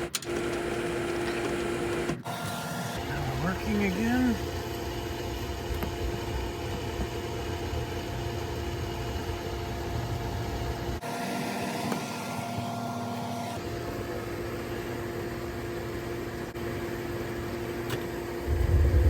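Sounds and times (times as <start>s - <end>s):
pool heater humming: 0.0s - 19.0s
low rumble: 18.4s - 19.0s
steady tones: 18.4s - 19.0s.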